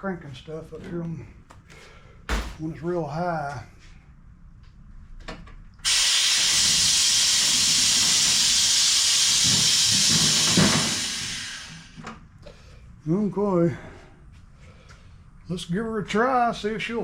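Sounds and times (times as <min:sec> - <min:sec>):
air release hissing: 0:05.8 - 0:12.0.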